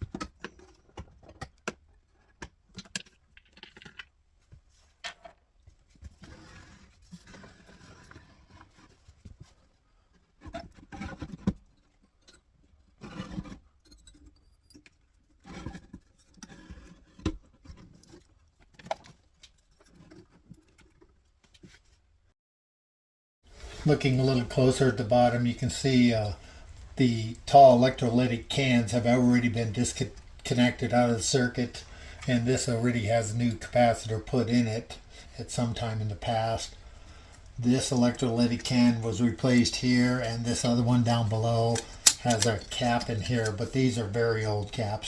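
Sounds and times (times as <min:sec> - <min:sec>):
metal chassis clicks and knocks: 0:41.6 - 0:43.7.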